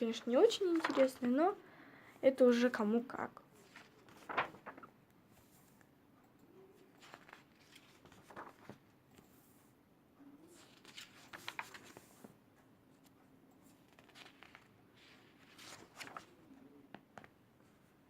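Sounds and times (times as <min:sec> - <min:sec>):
paper pages rustling: 0:00.1 - 0:01.5, 0:03.6 - 0:05.8, 0:06.7 - 0:09.6, 0:10.4 - 0:12.4, 0:13.0 - 0:17.4
soft crinkles and taps: 0:16.9 - 0:17.4.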